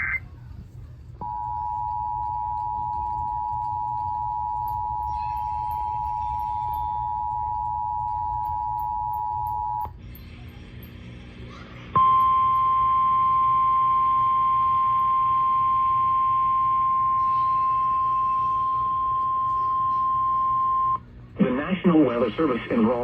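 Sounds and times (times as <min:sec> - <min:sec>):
steady warning tone: 0:00.0 - 0:00.3, 0:01.2 - 0:11.0, 0:12.0 - 0:23.0
two-tone attention signal: 0:01.2 - 0:09.9, 0:12.0 - 0:21.0.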